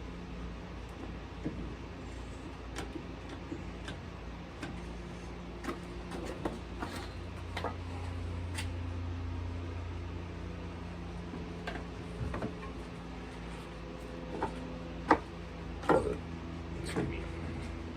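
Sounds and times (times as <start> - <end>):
steady low hum: 0.0 - 17.9
tools and wood clicking and knocking: 2.7 - 4.9, 14.2 - 16.2.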